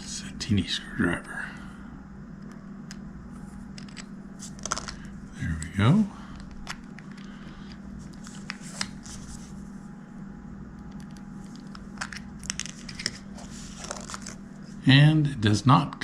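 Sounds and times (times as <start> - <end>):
steady low hum: 0.0 - 16.0
small clicks and handling noises: 2.4 - 9.4, 10.8 - 14.4.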